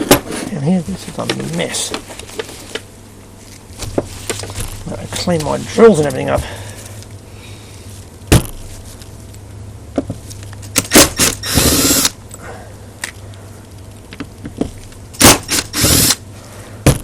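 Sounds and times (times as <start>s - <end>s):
low steady hum: 0.0s - 17.0s
power tool burst: 10.8s - 12.2s, 15.2s - 16.2s.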